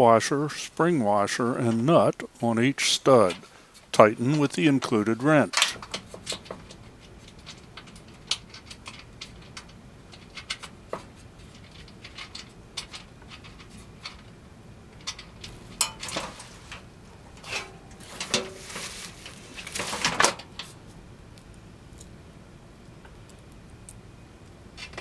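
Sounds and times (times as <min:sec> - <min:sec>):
metal scraping: 0:15.0 - 0:21.0.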